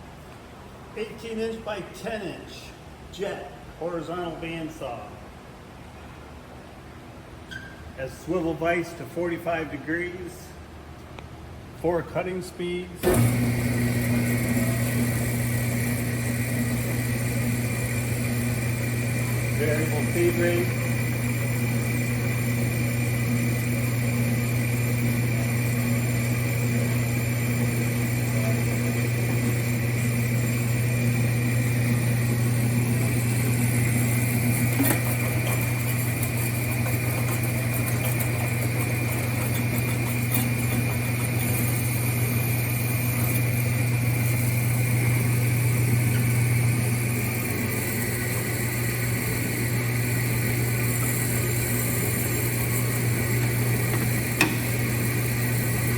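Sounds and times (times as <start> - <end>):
bandsaw humming with whine: 13.0 - 55.9.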